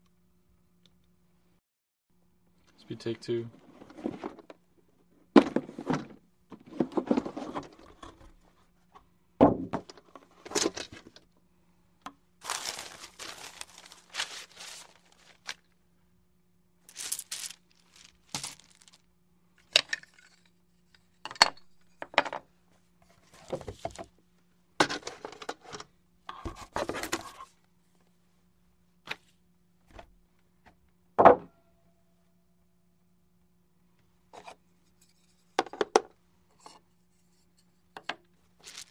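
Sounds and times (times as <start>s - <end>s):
tearing and crinkling: 12.4s - 15.7s, 16.9s - 19.0s, 38.6s - 38.9s.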